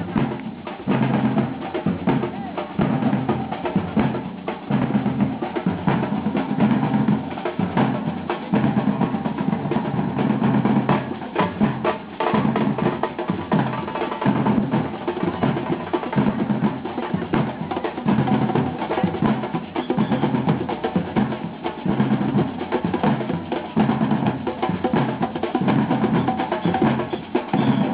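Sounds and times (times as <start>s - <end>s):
drums playing fast rhythm: 0.0s - 27.9s.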